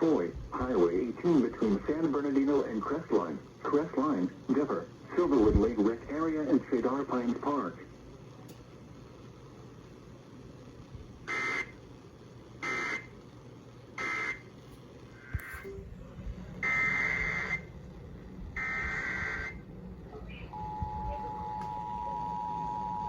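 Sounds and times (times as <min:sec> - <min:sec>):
buzzy data burst screech: 0:16.6 - 0:17.7, 0:18.6 - 0:19.6.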